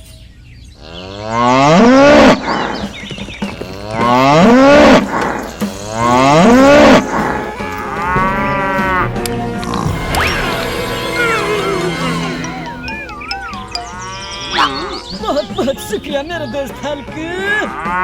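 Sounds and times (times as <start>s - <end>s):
cow mooing: 0.8s - 2.6s, 3.8s - 15.5s, 17.6s - 18.0s.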